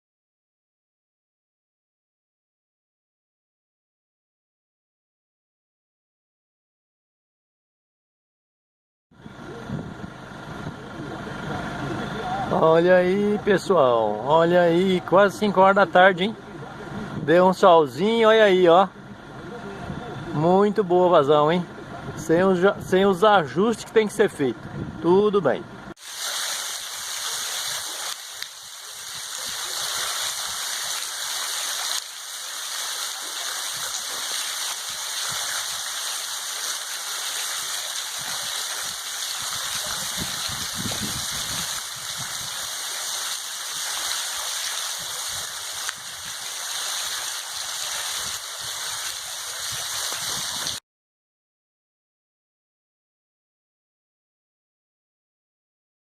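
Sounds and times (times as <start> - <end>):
water pouring and splashing: 26.0 - 50.8.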